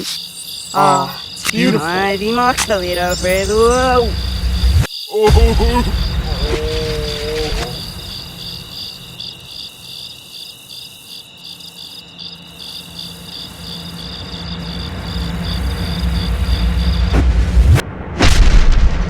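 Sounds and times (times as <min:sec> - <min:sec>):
crickets chirping: 0:00.0 - 0:17.2
low rumble: 0:02.0 - 0:09.2, 0:14.0 - 0:19.0.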